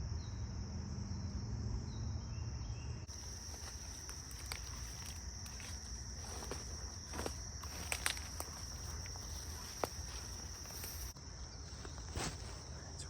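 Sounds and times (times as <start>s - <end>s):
crickets trilling: 0.0s - 13.0s
footsteps through undergrowth: 3.1s - 12.9s.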